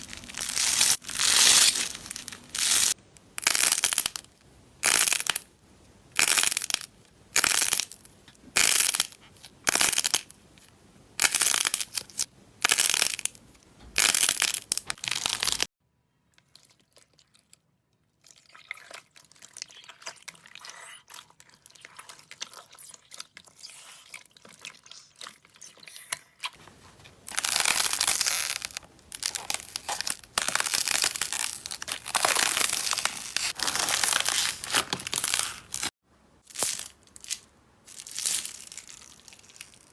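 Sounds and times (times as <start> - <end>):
hands squishing slime: 26.5 - 35.9.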